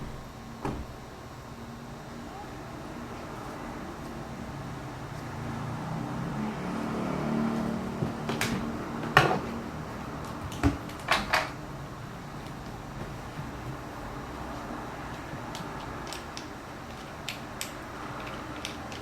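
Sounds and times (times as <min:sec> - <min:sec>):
low steady hum: 0:00.0 - 0:06.6.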